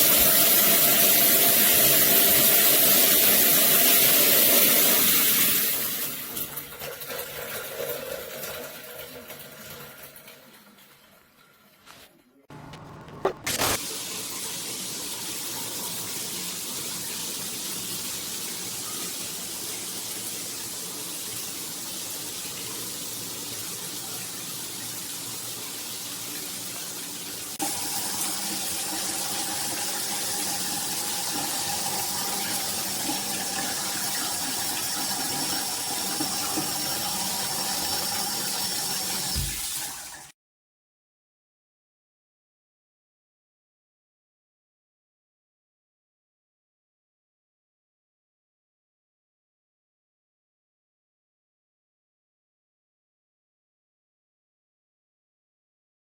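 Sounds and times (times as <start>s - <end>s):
shower water spraying: 0.0s - 6.2s, 13.5s - 40.3s.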